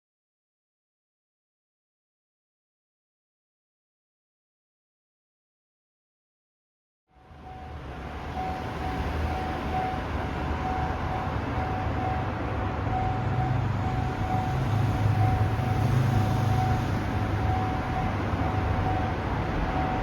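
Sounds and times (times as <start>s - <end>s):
train rumbling past: 7.2s - 20.0s
level crossing alarm ringing: 7.4s - 20.0s.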